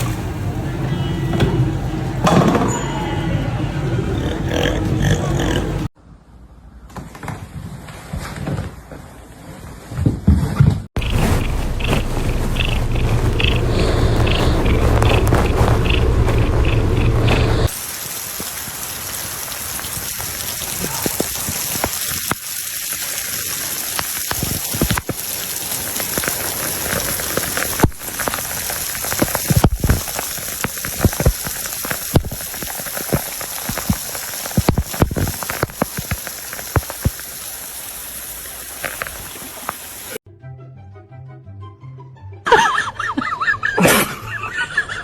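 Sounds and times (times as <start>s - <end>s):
steady hiss with ticks and pops: 11.0s - 40.2s.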